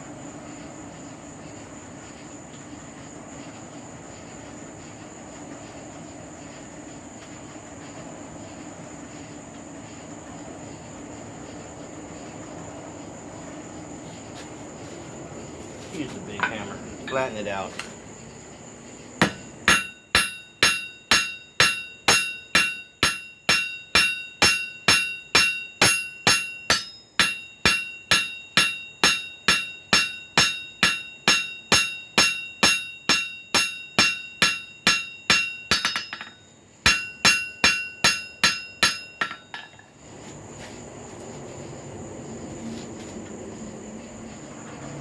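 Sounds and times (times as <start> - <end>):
hammer ringing on anvil: 19.2 - 39.9.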